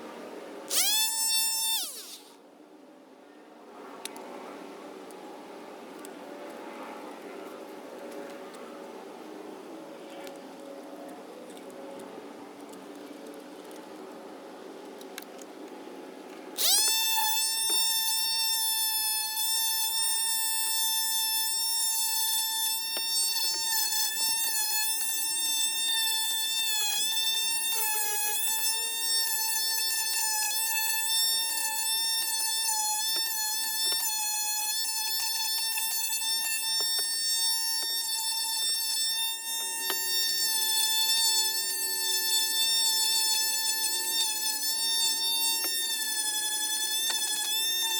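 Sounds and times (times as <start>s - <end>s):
electric sander whining: 0.7s - 2.4s, 16.6s - 47.9s.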